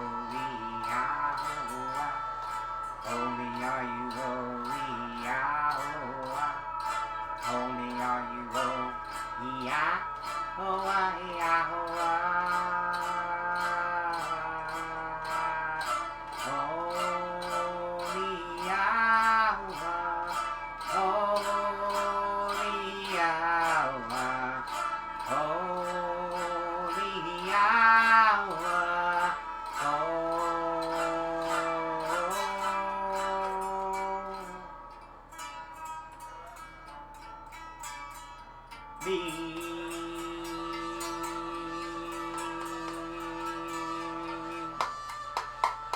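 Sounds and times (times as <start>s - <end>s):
gliding melody: 0.0s - 45.9s
plucked string sound: 0.0s - 45.9s
steady beat: 39.1s - 45.9s.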